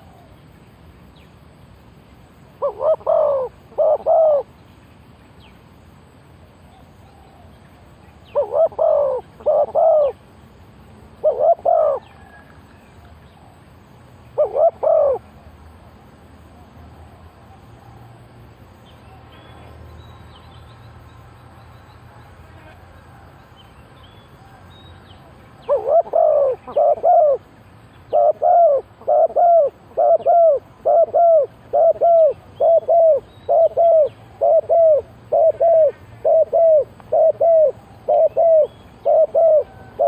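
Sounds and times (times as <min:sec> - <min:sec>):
dove cooing: 0:02.6 - 0:04.5, 0:08.3 - 0:10.2, 0:11.2 - 0:12.5, 0:14.4 - 0:15.4, 0:25.6 - 0:27.5, 0:28.1 - 0:40.0.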